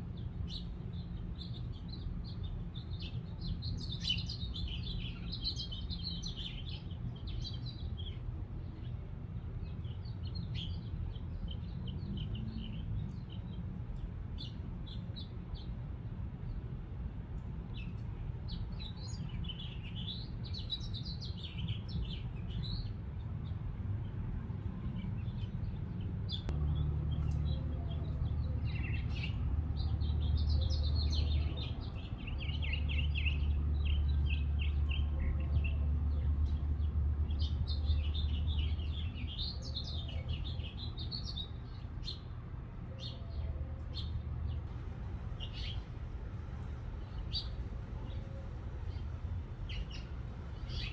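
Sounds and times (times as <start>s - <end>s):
low steady rumble: 0.0s - 50.9s
birds chirping: 17.7s - 50.9s.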